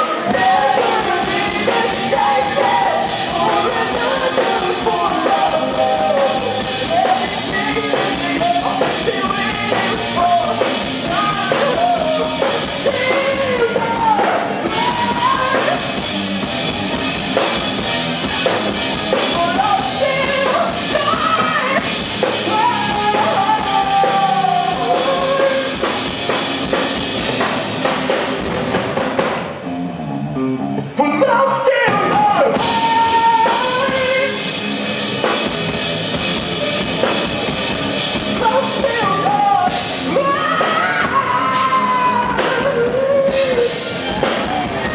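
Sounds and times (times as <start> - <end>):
person singing: 0.0 - 16.1, 18.2 - 26.0, 30.7 - 34.6, 38.2 - 44.9
live rock band playing: 0.0 - 44.9.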